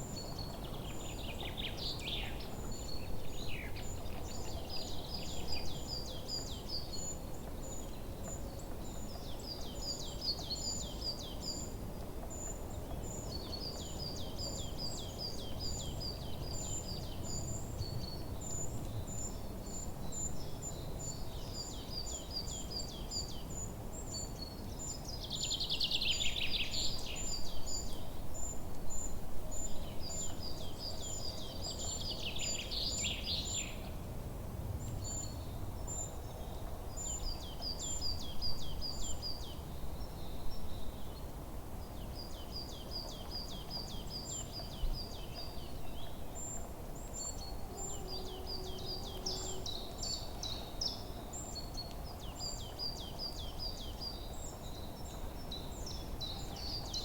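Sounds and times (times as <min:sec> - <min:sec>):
bird song phrases: 0:07.8 - 0:34.0, 0:34.8 - 0:57.0.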